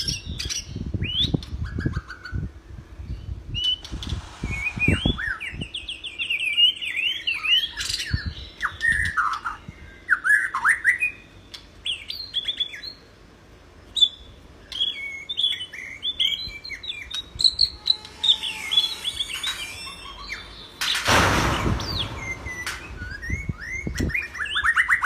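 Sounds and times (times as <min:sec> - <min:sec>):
loud rushing noise: 0:03.8 - 0:06.3, 0:17.4 - 0:23.8
bird singing whistled phrases: 0:14.0 - 0:20.8, 0:21.9 - 0:25.0.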